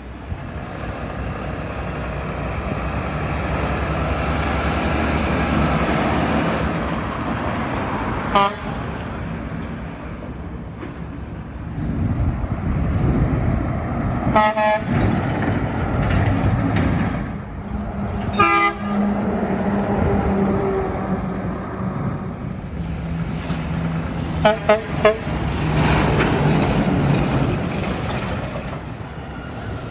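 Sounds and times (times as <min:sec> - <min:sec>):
steady road traffic: 0:00.0 - 0:29.9
truck horn toots: 0:08.3 - 0:08.9, 0:14.3 - 0:15.0, 0:18.3 - 0:19.4, 0:24.4 - 0:25.4.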